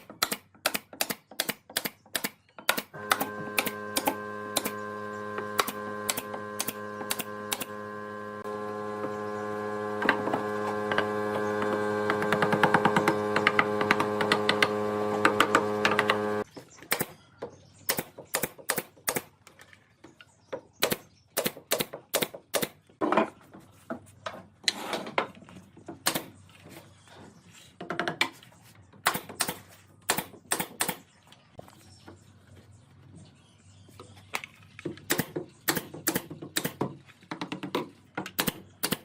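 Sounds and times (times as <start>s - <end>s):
power tool motor humming: 3.0s - 16.5s.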